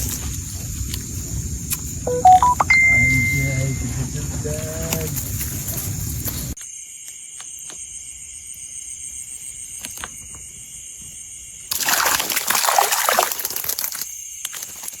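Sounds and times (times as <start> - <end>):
high-pitched whine: 2.1 - 5.2
water splashing: 11.7 - 14.0.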